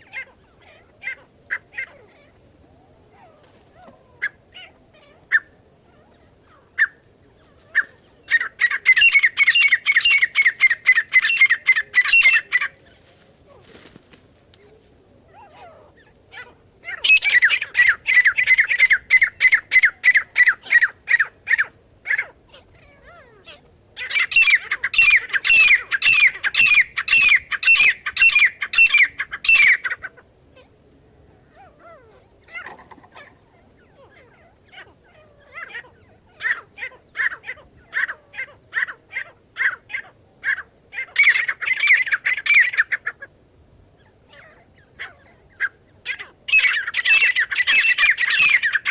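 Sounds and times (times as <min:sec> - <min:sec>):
bird calling repeated notes: 0:07.8 - 0:12.8, 0:23.4 - 0:30.2, 0:44.4 - 0:48.9.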